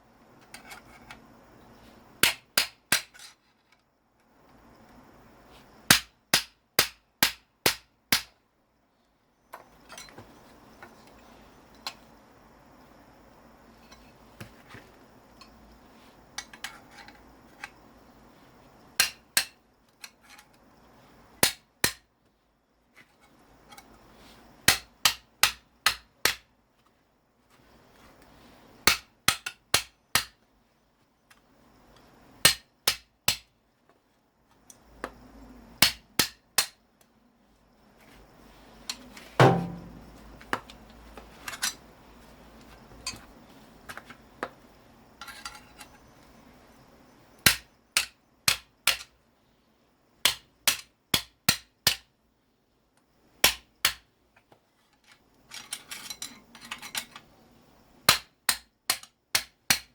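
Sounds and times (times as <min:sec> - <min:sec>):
hammer striking metal motor: 0:39.4 - 0:40.1.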